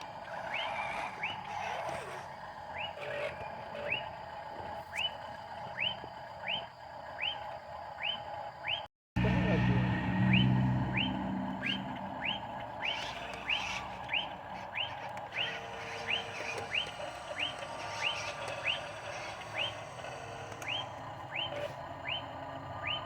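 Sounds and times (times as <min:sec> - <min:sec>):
upward sweeping bird chirp: 0:10.3 - 0:14.9.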